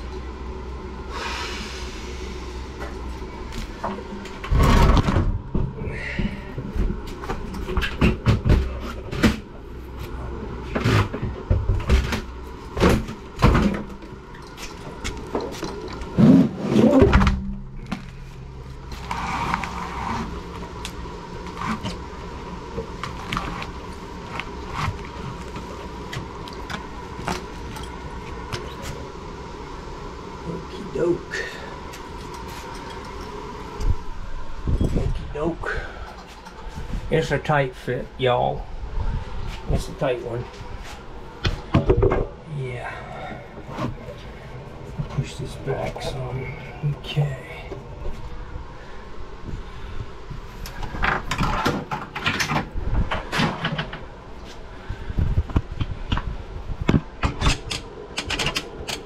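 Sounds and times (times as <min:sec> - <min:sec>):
steady low hum: 0:00.0 - 0:59.0
thumps and scrapes of heavy tank: 0:03.7 - 0:09.5, 0:10.6 - 0:20.7, 0:50.7 - 0:54.1.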